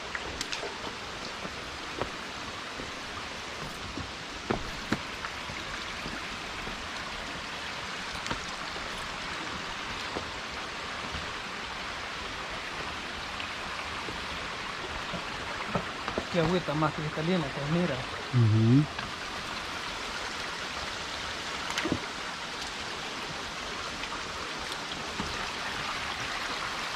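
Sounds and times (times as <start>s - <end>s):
stream water running: 0.0s - 26.9s.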